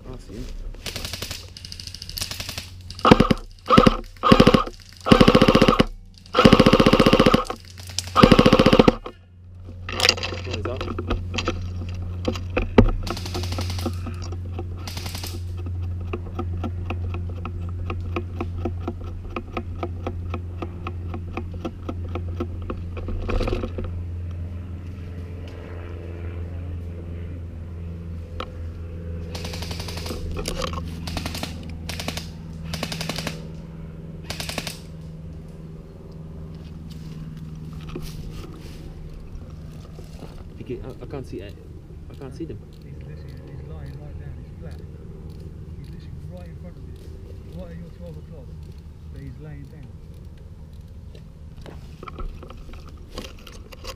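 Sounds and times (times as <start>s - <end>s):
steady low hum: 0.0s - 53.9s
airsoft gun firing rapidly: 0.8s - 9.1s, 13.0s - 14.1s, 14.8s - 15.4s, 29.3s - 30.3s, 31.0s - 33.4s, 34.2s - 34.9s.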